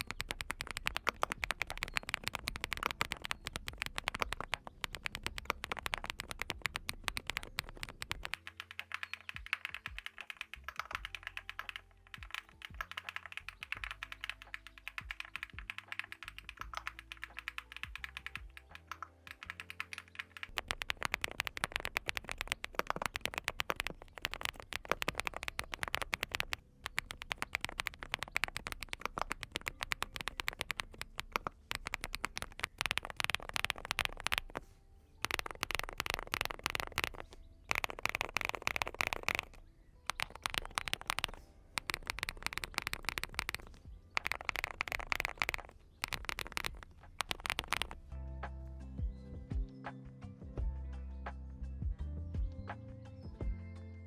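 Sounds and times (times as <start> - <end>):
mechanical keyboard typing: 0.0 - 34.6, 35.2 - 48.0.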